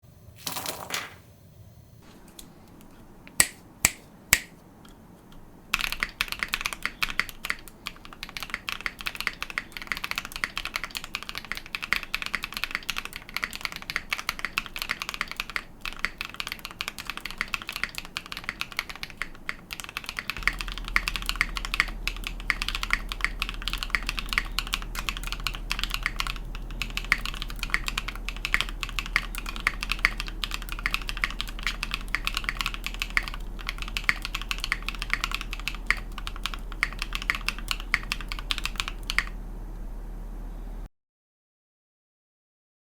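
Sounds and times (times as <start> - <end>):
mechanical keyboard typing: 5.7 - 39.4
low steady hum: 19.2 - 40.9.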